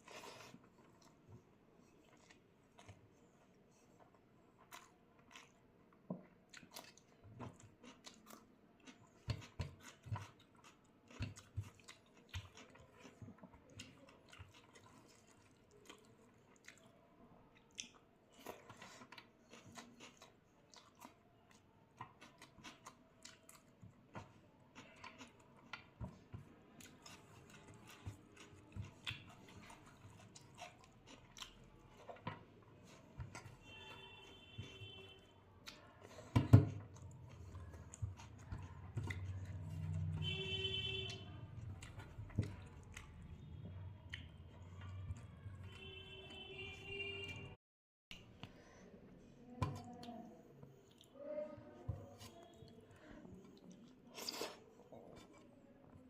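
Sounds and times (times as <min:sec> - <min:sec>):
wet chewing mouth clicks: 0:26.8 - 0:32.1, 0:49.9 - 0:51.2.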